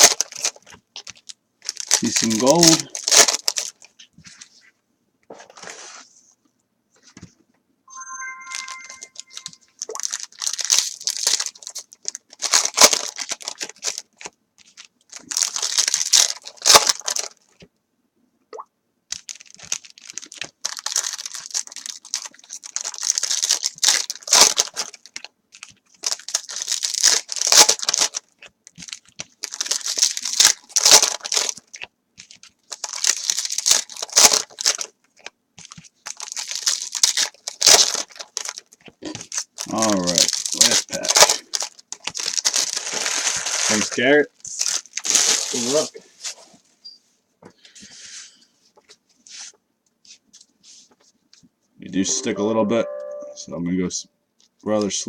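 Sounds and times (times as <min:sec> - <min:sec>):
foil wrappers tearing and crinkling: 0:00.0 - 0:04.0, 0:09.7 - 0:17.6, 0:19.1 - 0:45.9.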